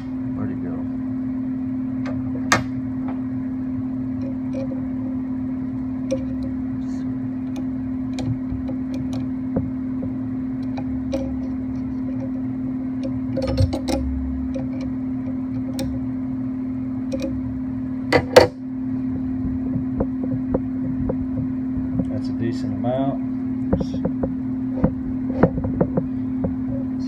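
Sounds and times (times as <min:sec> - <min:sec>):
steady low hum: 0:00.0 - 0:27.0
metal parts and tools clicking: 0:06.0 - 0:06.6, 0:10.6 - 0:12.4, 0:13.0 - 0:16.0, 0:17.1 - 0:17.4.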